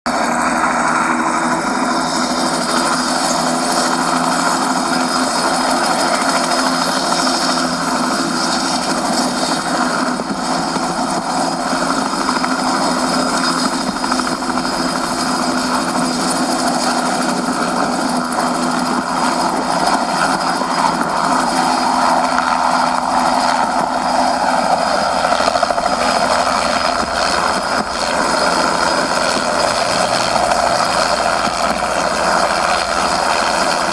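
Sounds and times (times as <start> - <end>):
model helicopter rotor noise: 0.1 - 33.9.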